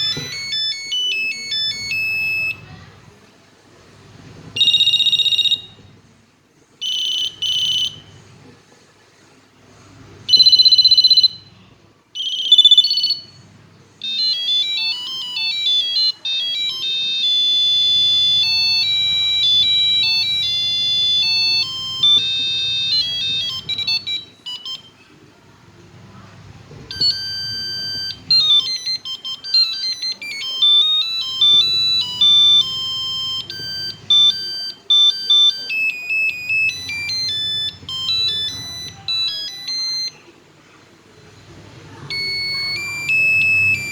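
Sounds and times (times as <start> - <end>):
electronic beeping melody: 0.0 - 2.7, 4.6 - 5.8, 6.8 - 8.1, 10.3 - 11.5, 12.2 - 13.4, 14.0 - 25.0, 26.9 - 40.3, 42.1 - 43.9
phone ringtone beeps: 0.0 - 2.9, 4.5 - 5.9, 6.8 - 8.2, 10.2 - 11.6, 12.2 - 13.4, 14.0 - 25.1, 26.9 - 40.4, 42.0 - 43.9.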